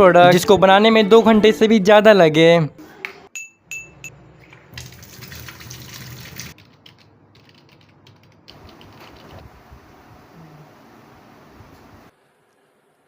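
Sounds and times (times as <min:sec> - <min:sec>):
spoon tapping a glass: 0:03.4 - 0:04.1
running tap water: 0:04.8 - 0:06.6
keyboard clicks: 0:06.5 - 0:09.4.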